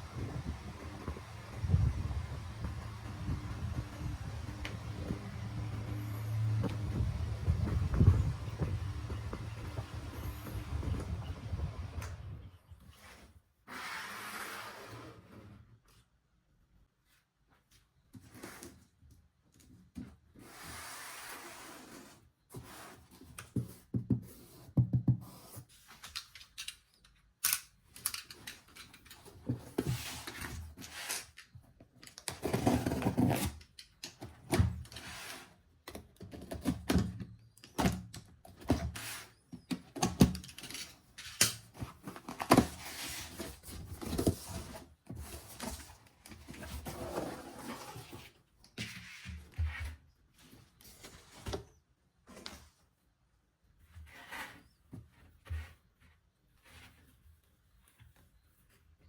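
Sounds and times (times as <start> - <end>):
plastic fan parts handled: 25.9 - 46.9.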